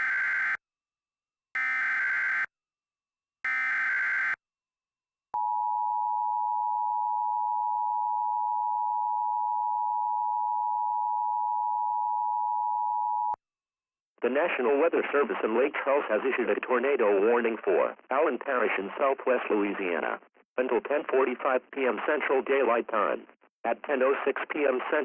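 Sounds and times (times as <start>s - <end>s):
harsh digital data bursts: 0.0s - 0.6s, 1.6s - 2.5s, 3.5s - 4.4s.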